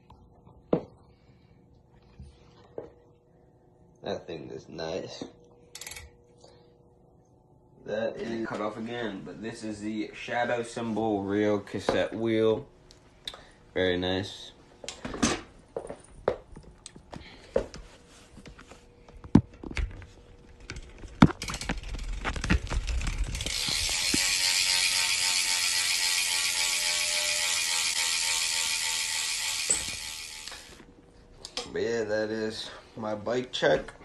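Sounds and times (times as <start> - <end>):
bike hub ratcheting buzz: 5.7 - 6.1, 21.4 - 30.8.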